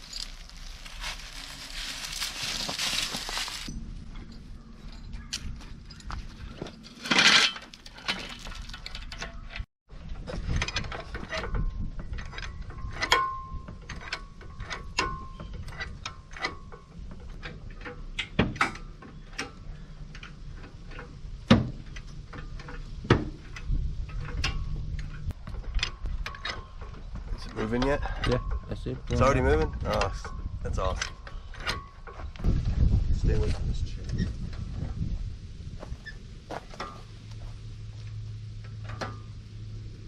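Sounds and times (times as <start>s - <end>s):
chains clinking: 0.0s - 6.2s.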